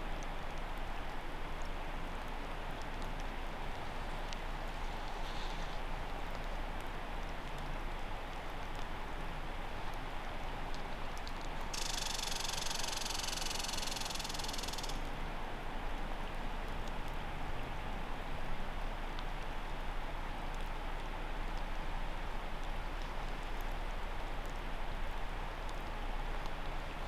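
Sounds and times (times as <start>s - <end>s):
steady rain falling: 0.0s - 27.0s
high hiss: 11.7s - 15.0s.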